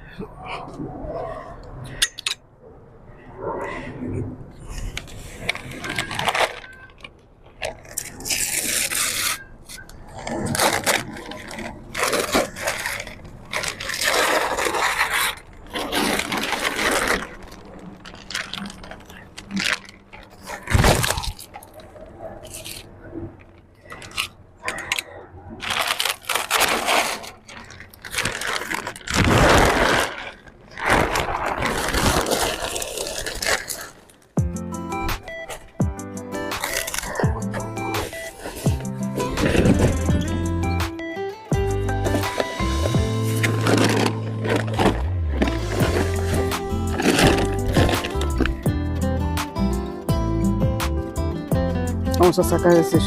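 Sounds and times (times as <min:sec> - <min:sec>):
scraping and rubbing: 0:07.6 - 0:25.0, 0:25.6 - 0:40.9, 0:41.6 - 0:49.2.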